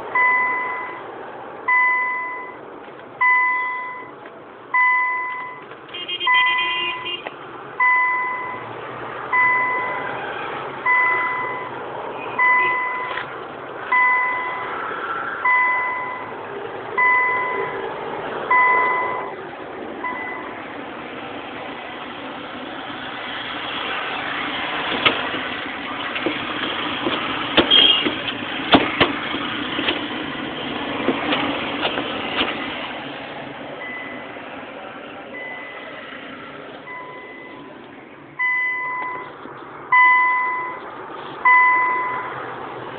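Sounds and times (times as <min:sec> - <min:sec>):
car alarm beeping: 0:00.1 - 0:01.1, 0:01.7 - 0:02.6, 0:03.2 - 0:08.7, 0:09.3 - 0:10.1, 0:10.8 - 0:13.3, 0:13.9 - 0:14.8, 0:15.4 - 0:16.4, 0:17.0 - 0:17.8, 0:18.5 - 0:19.4, 0:20.0 - 0:20.6, 0:27.6 - 0:28.2, 0:33.8 - 0:34.3, 0:35.3 - 0:35.9, 0:36.8 - 0:37.7, 0:38.4 - 0:40.8, 0:41.4 - 0:42.4
sharp clicks and knocks: 0:24.9 - 0:30.2, 0:30.9 - 0:32.7.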